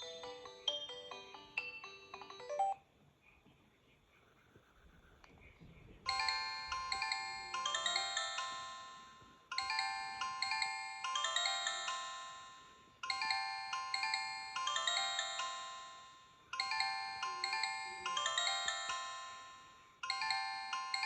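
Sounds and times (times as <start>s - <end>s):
phone ringtone bell-like melody: 0.0s - 2.8s, 6.1s - 21.0s.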